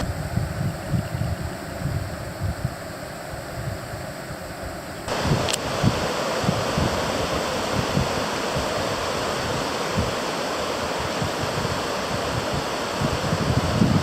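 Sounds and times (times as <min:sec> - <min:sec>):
wind buffeting microphone: 0:00.0 - 0:14.0
river water rushing: 0:05.1 - 0:14.0.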